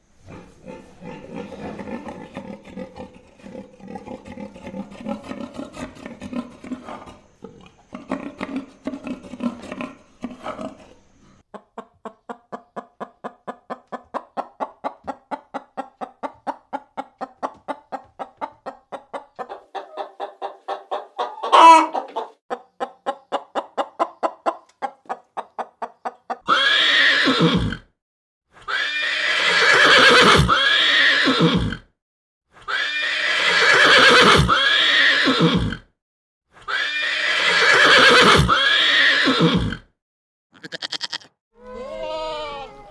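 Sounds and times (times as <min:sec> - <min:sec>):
horse whinnying: 0:26.5 - 0:27.9, 0:28.6 - 0:31.9, 0:32.6 - 0:35.9, 0:36.6 - 0:39.9, 0:40.6 - 0:42.9.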